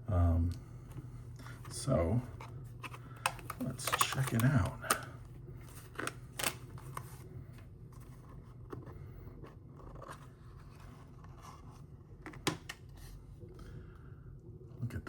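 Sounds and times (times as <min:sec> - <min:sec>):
packaging clicks: 0:02.8 - 0:05.1, 0:05.9 - 0:07.0.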